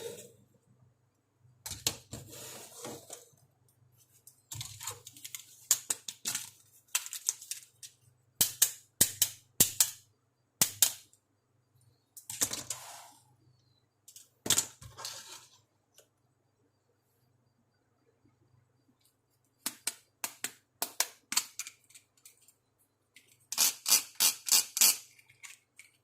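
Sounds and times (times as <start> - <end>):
rustling scrapes: 2.1 - 3.3
plastic parts clicking: 4.5 - 10.0, 19.6 - 22.6, 23.2 - 26.0.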